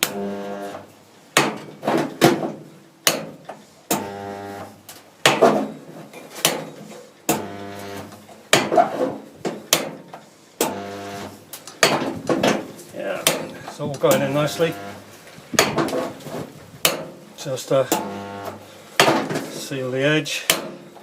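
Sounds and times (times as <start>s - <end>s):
welder electrical hum: 0.0s - 1.0s, 3.9s - 4.9s, 7.3s - 8.3s, 10.6s - 11.7s, 13.8s - 15.4s, 17.4s - 18.9s.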